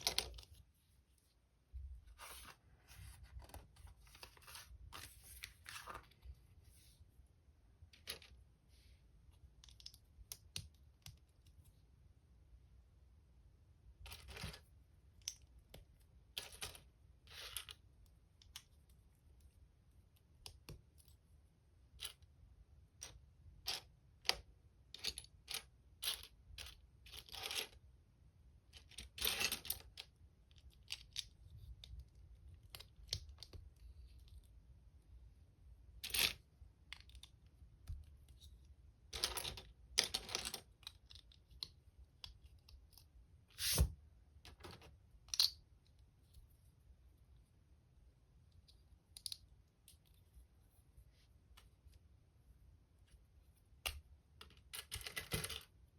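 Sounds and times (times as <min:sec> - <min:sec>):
rustling through plastic parts: 0:00.0 - 0:07.1, 0:28.7 - 0:34.6, 0:35.9 - 0:47.4, 0:52.8 - 0:55.9.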